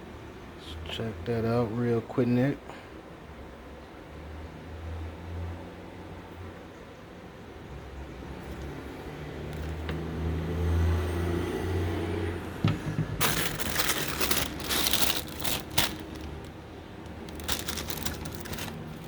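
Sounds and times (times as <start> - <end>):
paper rustling and crinkling: 13.2 - 19.0.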